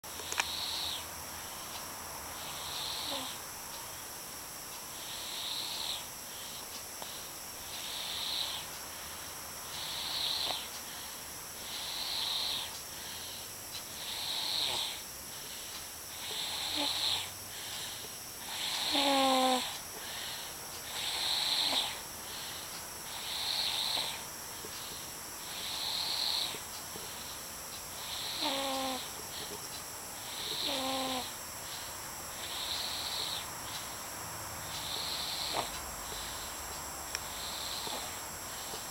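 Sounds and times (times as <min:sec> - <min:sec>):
baby snoring softly: 0:00.1 - 0:01.7, 0:02.3 - 0:04.0, 0:04.9 - 0:29.6, 0:30.2 - 0:34.0, 0:34.7 - 0:38.9
squeaky whistle in snore: 0:00.4 - 0:01.1, 0:09.8 - 0:10.7, 0:28.1 - 0:29.1, 0:30.3 - 0:31.3.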